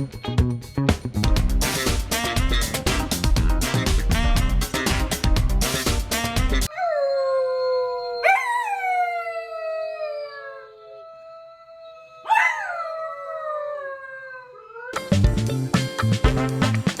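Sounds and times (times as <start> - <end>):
upbeat music: 0.0 - 6.7, 15.0 - 17.0
animal howling: 6.7 - 15.0.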